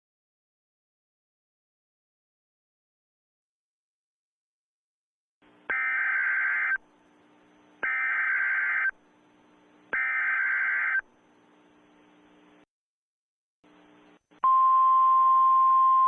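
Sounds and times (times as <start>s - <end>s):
screeching digital data bursts: 5.7s - 6.8s, 7.8s - 8.9s, 9.9s - 11.0s.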